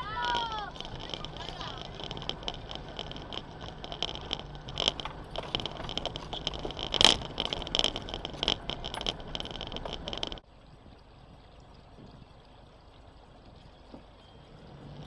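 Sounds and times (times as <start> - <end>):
rattles and knocks of vehicle: 0.0 - 10.4
off-road vehicle running: 0.0 - 15.0.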